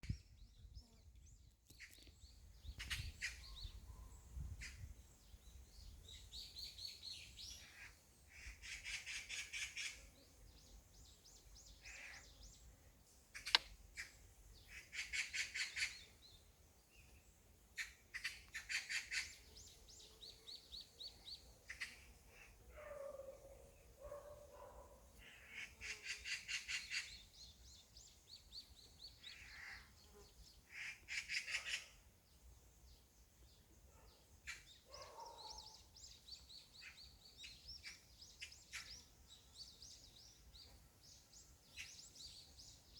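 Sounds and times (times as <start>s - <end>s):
small birds chirping: 0.0s - 42.9s
sharp click: 13.4s - 13.7s.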